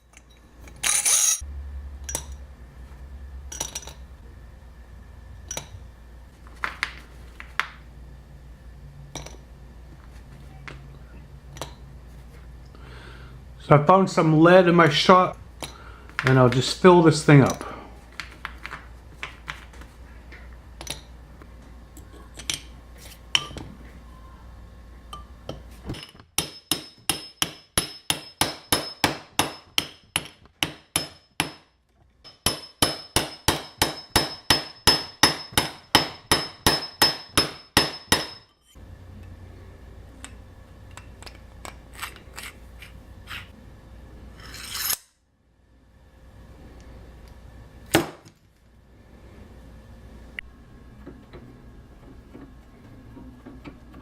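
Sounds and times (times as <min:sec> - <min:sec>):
hand tool working metal: 0:00.0 - 0:01.4, 0:44.4 - 0:45.2.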